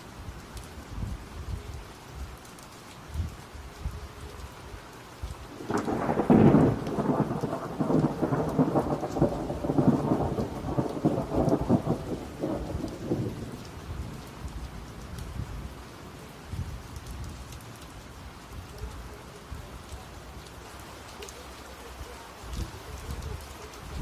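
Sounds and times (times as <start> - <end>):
steady rain: 0.0 - 24.0
thunder rolling: 5.5 - 14.2.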